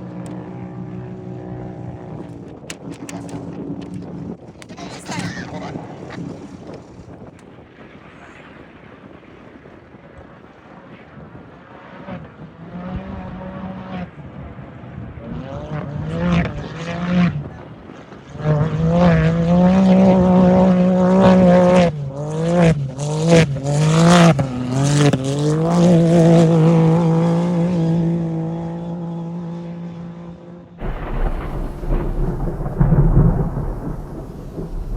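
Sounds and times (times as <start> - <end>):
engine revving: 30.8 - 34.9
steady low noise: 30.8 - 34.9.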